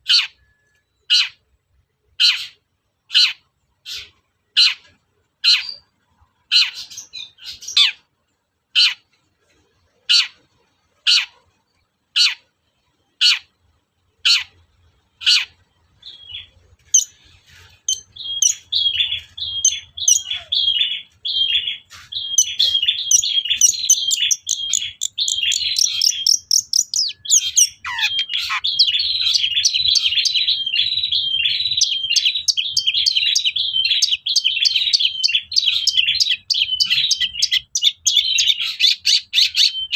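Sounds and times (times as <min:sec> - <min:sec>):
shrike chattering song: 0:15.2 - 0:39.9.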